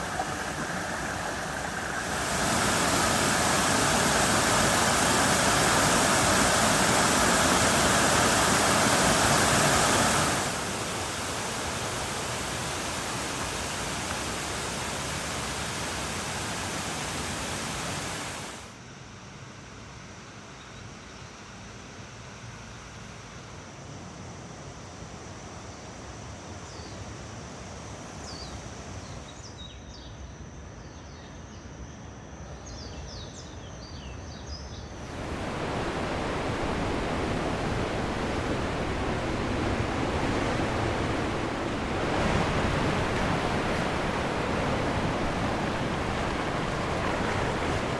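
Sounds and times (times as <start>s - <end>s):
birds chirping: 0.0s - 12.8s, 35.0s - 47.9s
rushing water: 0.0s - 18.7s, 35.0s - 47.9s
soft hiss: 0.0s - 18.7s, 35.0s - 47.9s.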